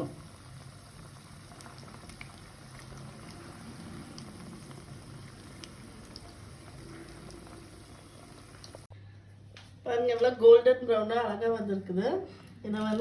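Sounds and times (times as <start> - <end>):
food deep-frying in hot oil: 0.0 - 8.9.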